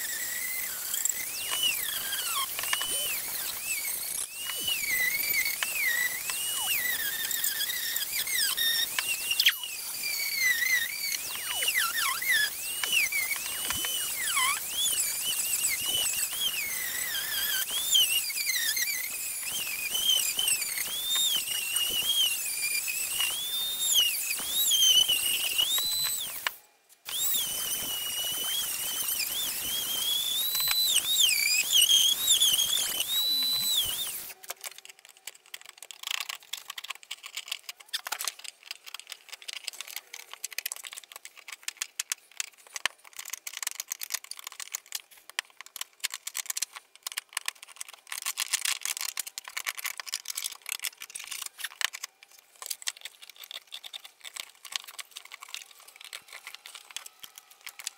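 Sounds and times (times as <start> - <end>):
power tool cutting wood: 0.0 - 34.4, 53.6 - 57.9
scratchy rapid clicks: 0.0 - 57.9.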